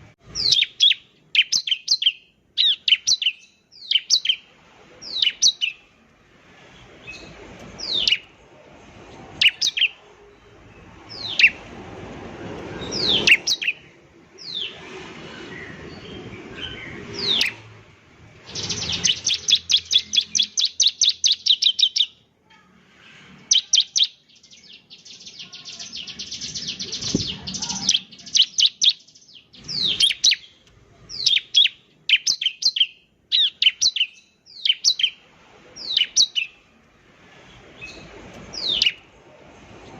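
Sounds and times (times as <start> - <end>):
bird singing: 0.3 - 5.9, 7.0 - 8.3, 9.4 - 11.7, 12.8 - 17.7, 18.4 - 22.2, 23.5 - 35.2, 35.8 - 36.7, 37.8 - 39.1
background rushing noise: 3.8 - 21.3, 34.6 - 39.9.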